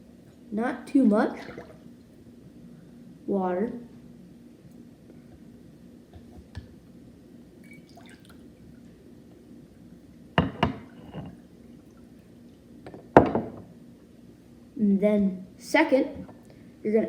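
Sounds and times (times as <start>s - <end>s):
small drips and clicks: 7.6s - 8.4s
water being poured: 7.6s - 8.4s.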